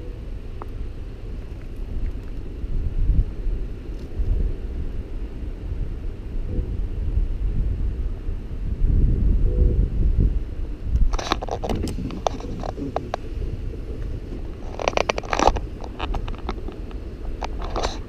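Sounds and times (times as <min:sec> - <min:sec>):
wind buffeting microphone: 0:00.0 - 0:18.0
scraping and clicking: 0:11.1 - 0:13.3, 0:13.9 - 0:18.0.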